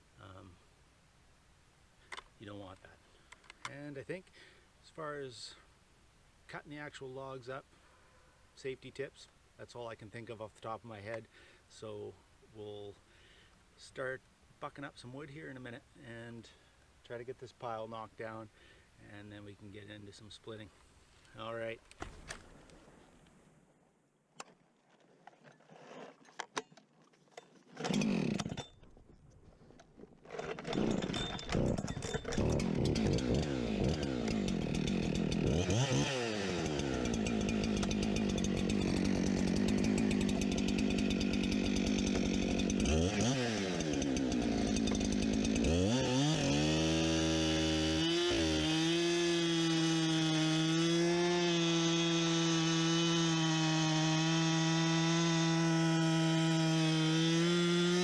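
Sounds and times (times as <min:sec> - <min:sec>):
chainsaw cutting logs: 0:24.4 - 0:58.0.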